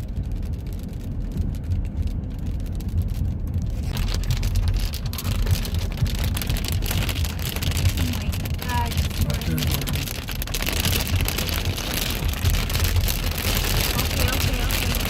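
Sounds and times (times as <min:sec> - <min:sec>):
low rumble: 0:00.0 - 0:15.0
heavy rain hissing: 0:03.7 - 0:15.0.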